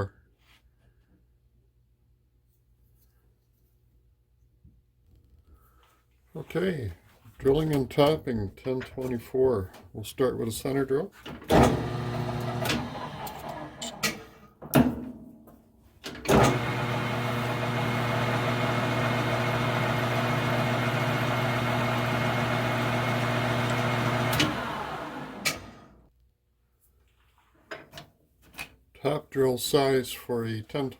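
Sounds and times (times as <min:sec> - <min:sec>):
lathe motor humming: 0:11.6 - 0:14.0, 0:16.3 - 0:26.0.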